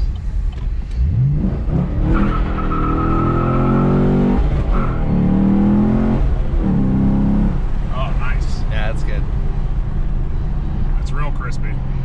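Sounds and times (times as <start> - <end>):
car engine accelerating through gears: 0.0 - 7.9.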